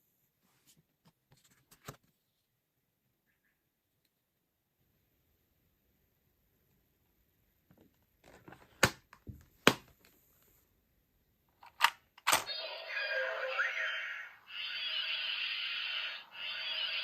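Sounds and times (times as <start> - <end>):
electronic sound effect from speaker: 12.4 - 17.0.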